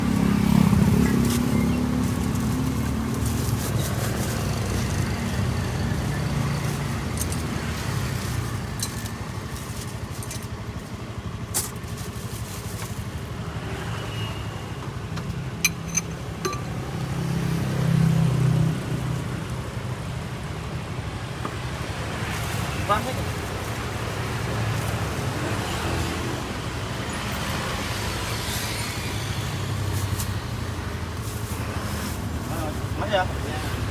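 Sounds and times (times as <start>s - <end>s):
vehicles passing: 0.0s - 33.9s
sharp clicks and clinks: 15.6s - 16.8s.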